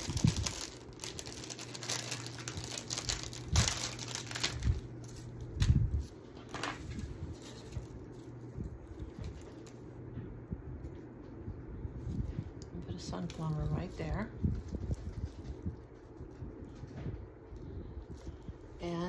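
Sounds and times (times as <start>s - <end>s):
craft materials crinkling: 0.0s - 5.8s
steady low hum: 0.0s - 19.0s.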